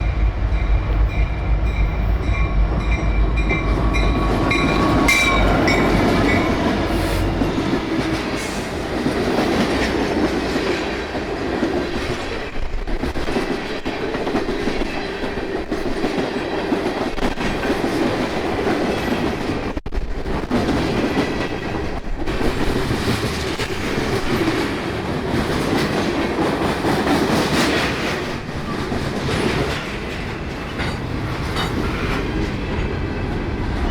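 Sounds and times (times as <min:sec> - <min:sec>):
diesel locomotive rumble: 0:00.0 - 0:09.0.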